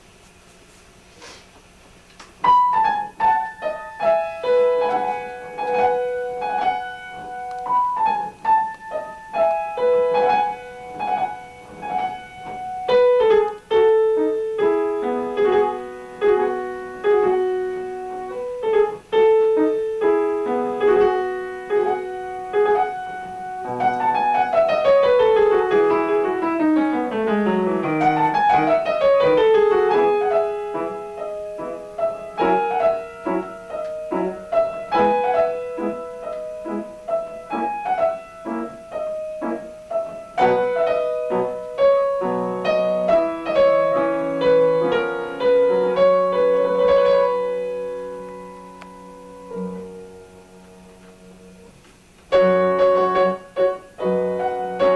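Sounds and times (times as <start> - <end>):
piano playing slow melody: 2.4 - 54.9.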